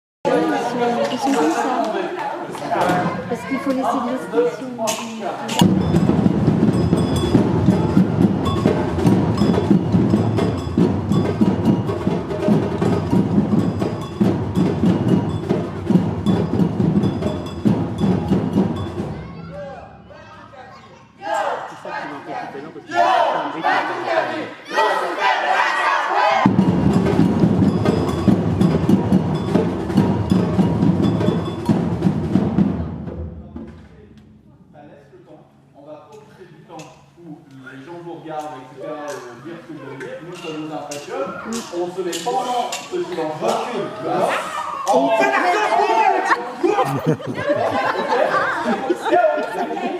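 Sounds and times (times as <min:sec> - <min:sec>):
drum ensemble playing rhythm: 0:02.7 - 0:21.8, 0:26.4 - 0:34.9, 0:45.0 - 0:49.9
sharp clacking beat: 0:04.8 - 0:20.8, 0:26.4 - 0:34.7.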